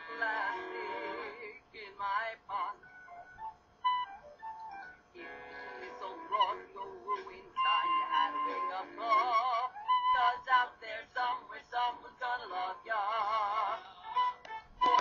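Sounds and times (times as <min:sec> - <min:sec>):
voices singing show tune: 0:00.0 - 0:03.0, 0:05.2 - 0:14.2
musical accompaniment: 0:02.9 - 0:10.5, 0:13.2 - 0:15.0.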